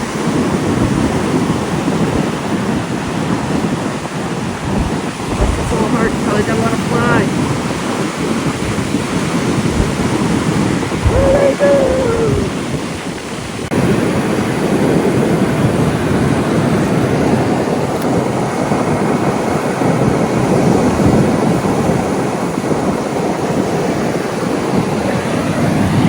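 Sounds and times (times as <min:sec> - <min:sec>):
wind buffeting microphone: 0:00.0 - 0:26.0
heavy ocean surf: 0:11.0 - 0:12.7.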